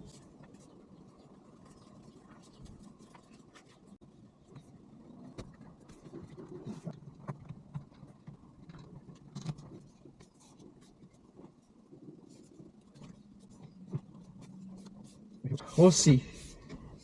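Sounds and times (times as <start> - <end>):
rubbing and rustling: 0.0 - 17.0.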